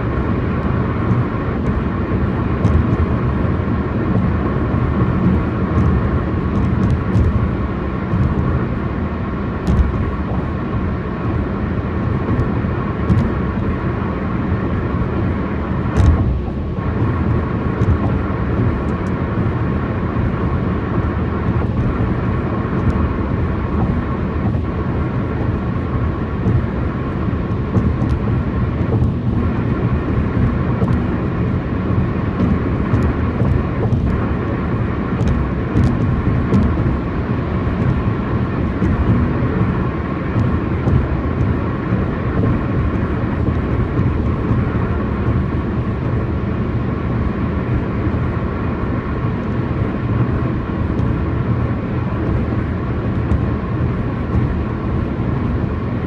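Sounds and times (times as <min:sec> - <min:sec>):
faint steady whine: 0:00.0 - 0:56.0
tyre roar on concrete road: 0:00.0 - 0:56.0
thumps from road bumps: 0:00.1 - 0:14.0, 0:15.8 - 0:46.9, 0:48.9 - 0:56.0.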